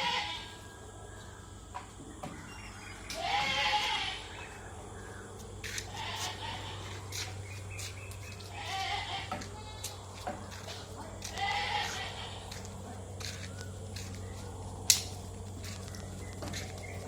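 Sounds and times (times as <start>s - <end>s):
goats bleating: 0.0s - 0.6s, 3.0s - 4.6s, 5.6s - 14.2s
steady low hum: 0.0s - 17.0s.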